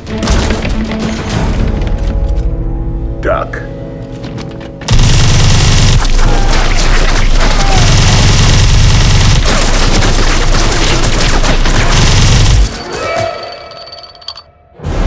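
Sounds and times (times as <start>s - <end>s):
rotary machine gun firing: 4.9s - 12.8s.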